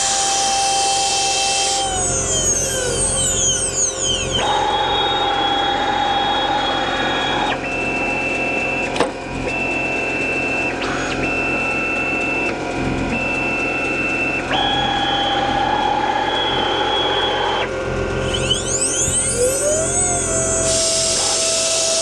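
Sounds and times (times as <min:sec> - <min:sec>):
stepper motors whining: 0:00.0 - 0:22.0.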